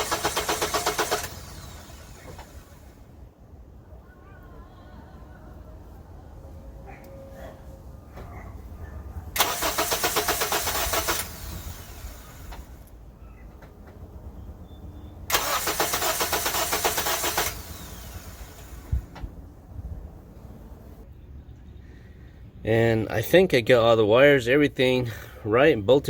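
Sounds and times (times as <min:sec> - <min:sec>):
car starter cranking: 0:00.0 - 0:03.0, 0:09.4 - 0:12.9, 0:15.3 - 0:19.3.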